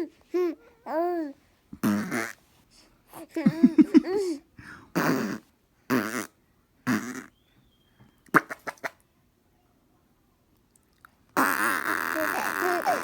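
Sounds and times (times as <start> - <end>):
baby laughing and babbling: 0.0 - 2.3, 3.1 - 5.3, 11.6 - 13.0
fart noises: 1.8 - 2.4, 5.0 - 7.3, 11.4 - 13.0.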